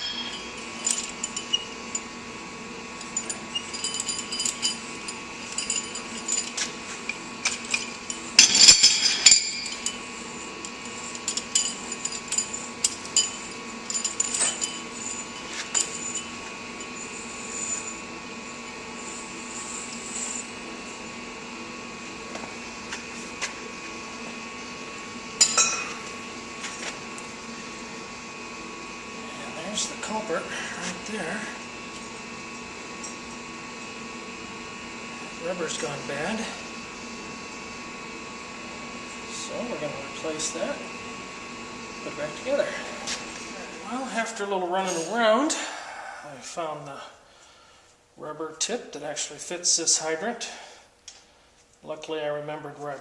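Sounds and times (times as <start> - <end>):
metal clanks: 0.0 - 1.7
metal rod clinking and scraping: 0.0 - 2.1, 3.0 - 10.0, 10.9 - 18.0, 25.4 - 26.0
steady hum: 0.0 - 53.0.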